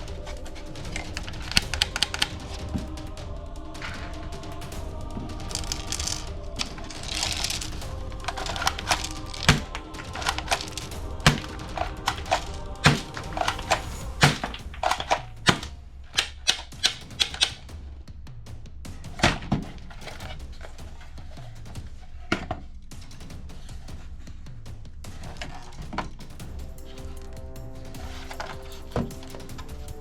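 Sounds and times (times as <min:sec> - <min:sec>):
background music: 0:00.0 - 0:23.7, 0:24.6 - 0:30.0
toy guns clicking: 0:08.3 - 0:17.6.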